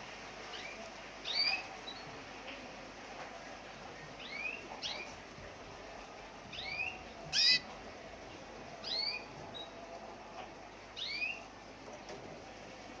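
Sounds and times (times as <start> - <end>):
canary chirping: 0.5 - 2.2, 4.2 - 5.2, 6.4 - 7.8, 8.8 - 9.8, 11.0 - 11.5.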